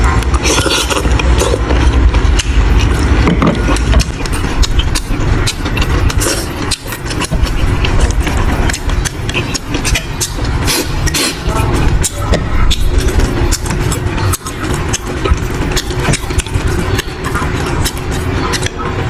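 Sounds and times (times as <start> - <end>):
chewing and smacking: 0.0 - 19.0
steady low rumble: 0.0 - 19.0.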